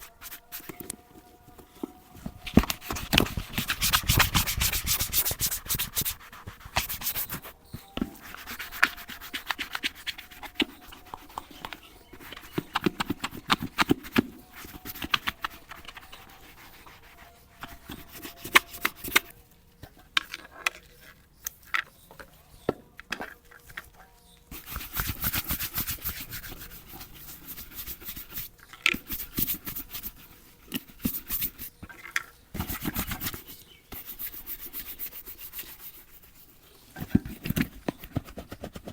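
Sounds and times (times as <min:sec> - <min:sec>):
brush scrubbing leather boots: 0:02.4 - 0:19.3, 0:24.5 - 0:31.7, 0:32.6 - 0:38.9.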